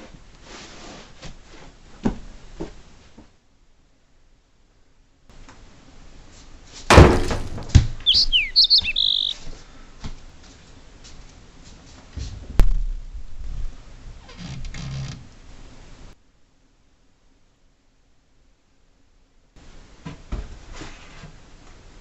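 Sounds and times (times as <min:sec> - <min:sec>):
loud thump: 0:06.9 - 0:08.0, 0:12.4 - 0:13.4
sharp knocks: 0:06.9 - 0:08.5
high gliding chirps: 0:08.0 - 0:09.4.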